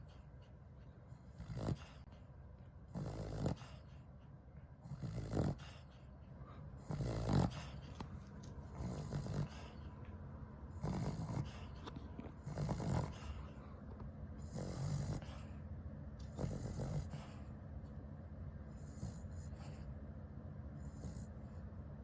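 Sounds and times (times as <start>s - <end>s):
dog snoring heavily: 1.1s - 2.1s, 2.9s - 4.0s, 4.8s - 6.0s, 6.8s - 10.0s, 10.7s - 13.8s, 14.4s - 15.6s, 16.2s - 17.5s, 18.7s - 19.9s, 20.8s - 21.6s.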